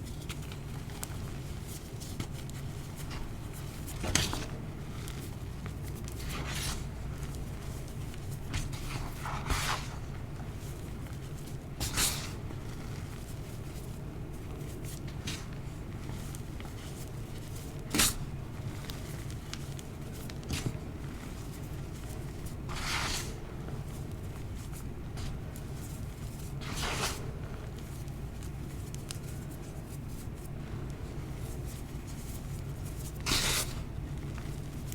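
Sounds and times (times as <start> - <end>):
chalk crunching by hand: 22.7 - 23.4, 26.6 - 27.3, 33.2 - 33.9.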